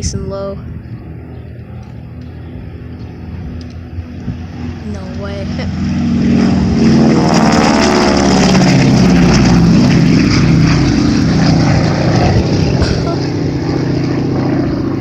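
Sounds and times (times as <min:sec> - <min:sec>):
propeller plane flying low past: 0:00.0 - 0:15.0.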